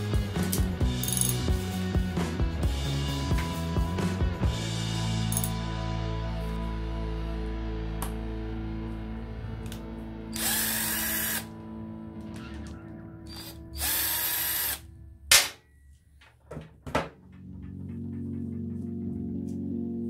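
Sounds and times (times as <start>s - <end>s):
background music: 0.0s - 16.1s, 17.1s - 20.0s
power drill whining: 10.3s - 11.5s, 13.3s - 14.8s.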